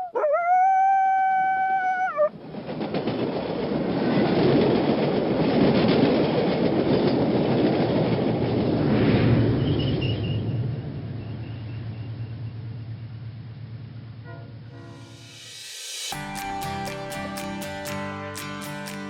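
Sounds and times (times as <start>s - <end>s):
moving train rumbling and clattering: 2.3s - 19.0s
train horn: 14.2s - 15.2s.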